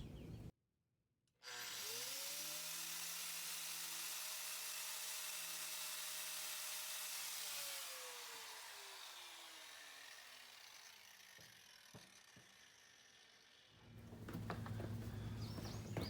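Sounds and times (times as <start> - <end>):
electric grinder whine: 1.4 - 13.8.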